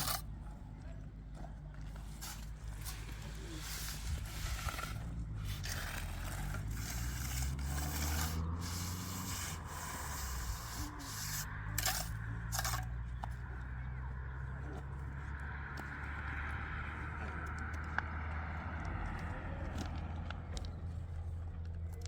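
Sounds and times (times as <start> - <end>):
scraping and rubbing: 0.0 - 0.3, 1.9 - 13.2.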